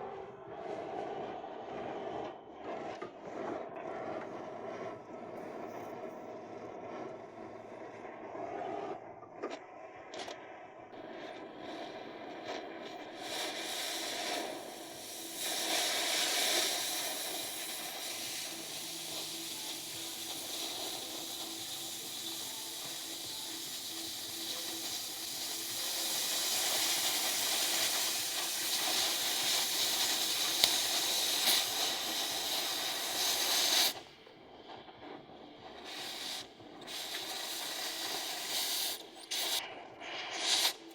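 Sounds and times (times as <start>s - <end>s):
cutting torch hissing: 11.0s - 34.1s, 35.6s - 40.9s.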